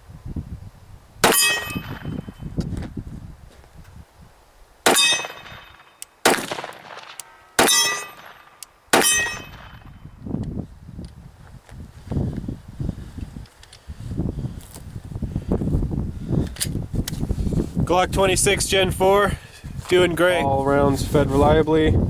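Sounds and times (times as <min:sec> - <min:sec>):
pistol shots: 0:01.2 - 0:02.2, 0:04.8 - 0:09.8.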